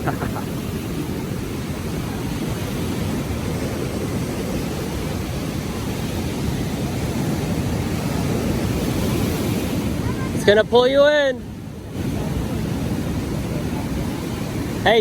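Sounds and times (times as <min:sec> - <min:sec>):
ocean surf rushing: 0:00.0 - 0:15.0
wind buffeting microphone: 0:11.4 - 0:15.0.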